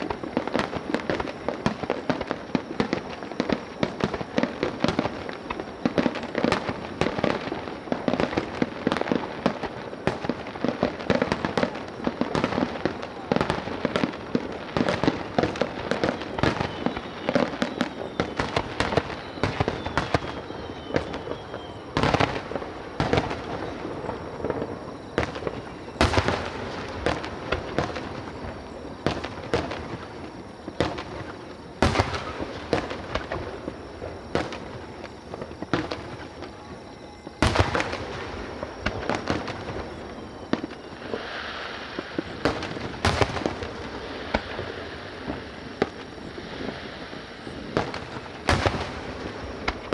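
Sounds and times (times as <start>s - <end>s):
firework shells bursting: 0.0s - 49.9s
fireworks crackling and popping: 0.0s - 49.9s.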